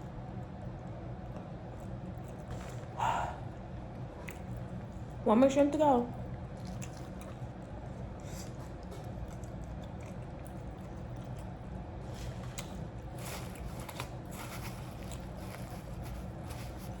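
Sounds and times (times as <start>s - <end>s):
steady low hum: 0.0s - 17.0s
person chewing and smacking: 6.5s - 17.0s.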